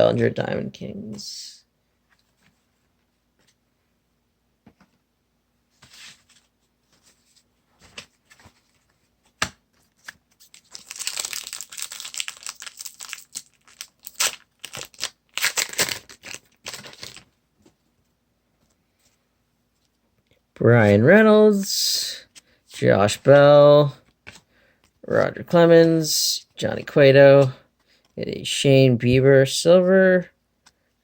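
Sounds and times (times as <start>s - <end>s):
wrapper crackling: 10.4s - 17.3s
wrapper crinkling and tearing: 10.4s - 17.3s.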